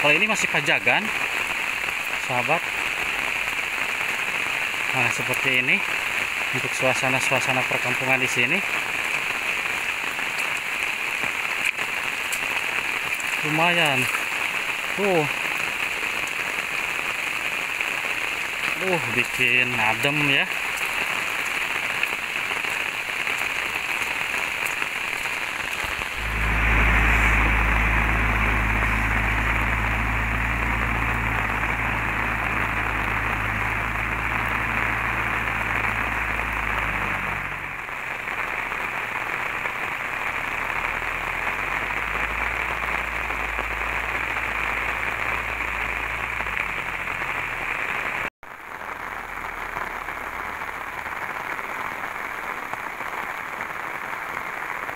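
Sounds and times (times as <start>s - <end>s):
heavy rain on an umbrella: 0.0s - 54.9s
low rumble: 25.1s - 48.3s.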